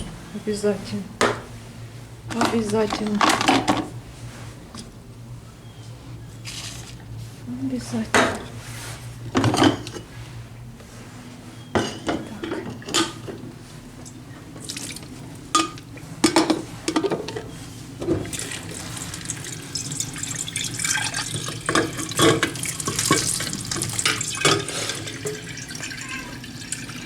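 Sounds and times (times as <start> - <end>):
dishes clinking: 9.4 - 10.1, 11.6 - 13.4, 15.5 - 17.5, 20.8 - 26.3
tap water running into sink: 18.2 - 27.0.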